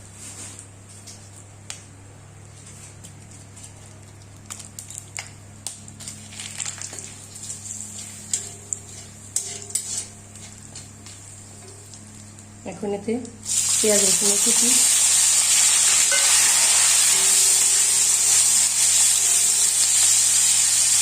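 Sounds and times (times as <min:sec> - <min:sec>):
steady low hum: 0:00.0 - 0:19.8
metal utensil clinking on pan: 0:15.9 - 0:17.2.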